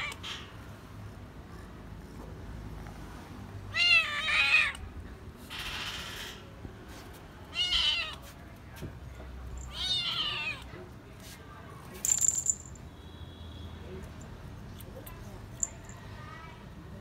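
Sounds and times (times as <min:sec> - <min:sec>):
cat meowing loudly: 0:00.0 - 0:00.2, 0:03.7 - 0:04.8, 0:07.5 - 0:08.2, 0:09.7 - 0:10.7.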